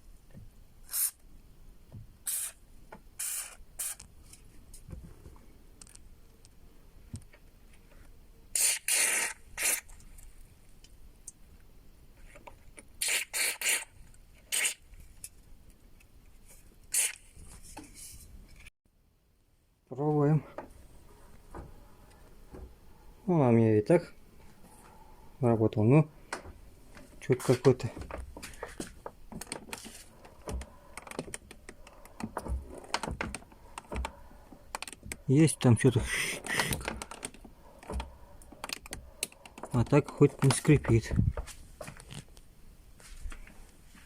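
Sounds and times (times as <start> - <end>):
aerosol can spraying: 0.9 - 1.2, 2.3 - 2.6, 3.2 - 4.0, 8.6 - 9.8, 16.9 - 17.2.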